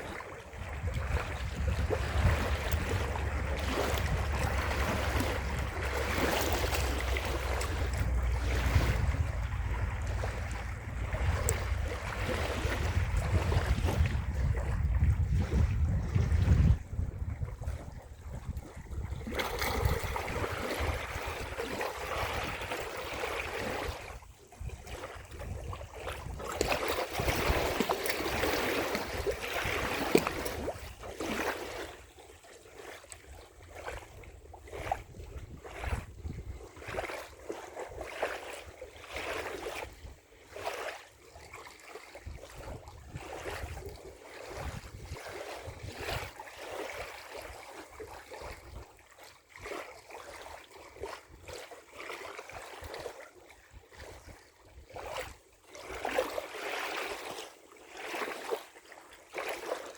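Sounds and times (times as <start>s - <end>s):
wind buffeting microphone: 0.0s - 31.9s, 33.9s - 37.1s, 42.2s - 46.4s
waves washing against shore: 0.0s - 53.2s.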